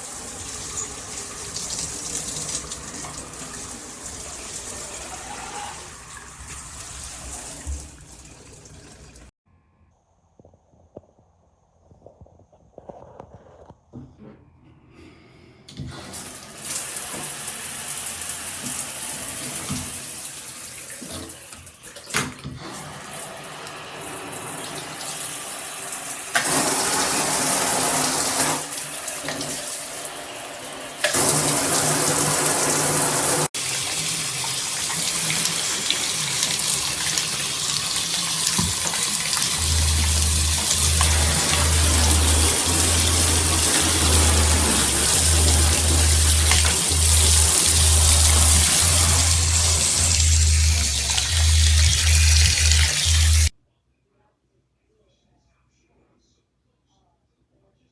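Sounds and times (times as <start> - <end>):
shower head spraying water: 24.2 - 29.6, 30.5 - 53.5
low hum: 39.6 - 53.5.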